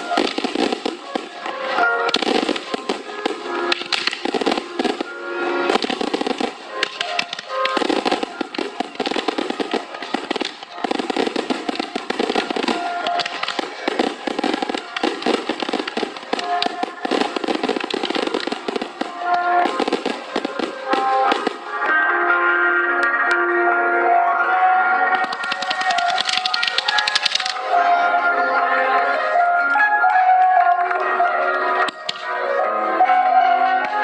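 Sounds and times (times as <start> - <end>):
fireworks crackling and popping: 0.0 - 21.9, 25.0 - 27.7, 31.8 - 32.4
music playing: 0.0 - 34.0.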